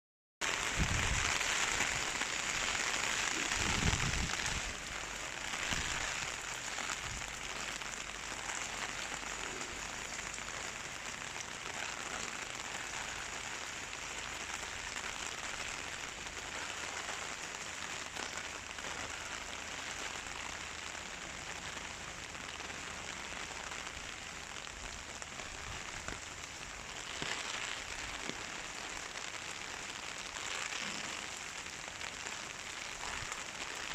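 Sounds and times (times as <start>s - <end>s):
heavy rain pouring: 0.4s - 33.9s
wind gusting rumble: 0.7s - 2.2s, 3.4s - 4.8s.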